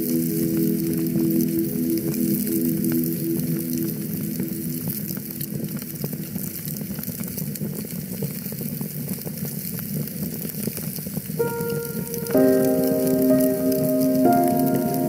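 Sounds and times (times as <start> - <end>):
background music: 0.0 - 6.9, 11.4 - 15.0
wood fire crackling: 0.0 - 15.0.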